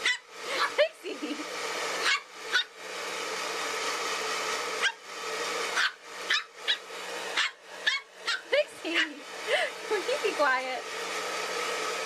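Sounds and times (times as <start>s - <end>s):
puppy barking: 0.0s - 0.7s, 2.0s - 2.7s, 4.8s - 5.0s, 5.7s - 9.2s
blow-dryer blowing: 0.0s - 12.0s.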